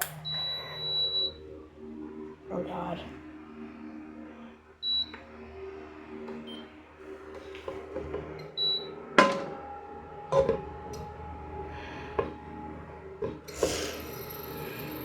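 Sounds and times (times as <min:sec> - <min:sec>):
kitchenware knocking and clinking: 0:09.2 - 0:09.6.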